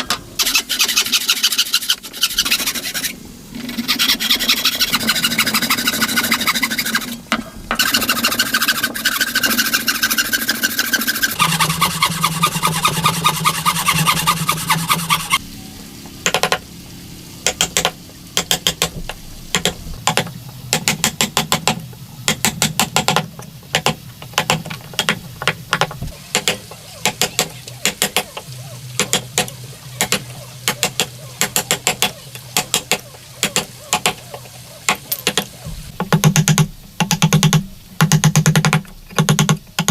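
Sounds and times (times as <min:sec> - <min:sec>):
sharp taps and knocks: 0:16.2 - 0:16.7, 0:17.4 - 0:39.9.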